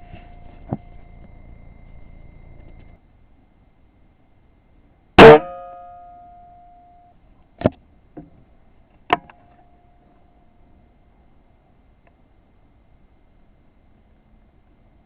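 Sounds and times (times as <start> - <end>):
spring ringing twang: 5.2 - 7.1.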